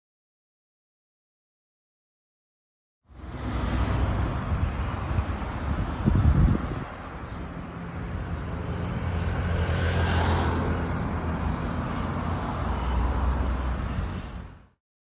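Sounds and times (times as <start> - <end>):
wind noise: 3.5 - 11.6.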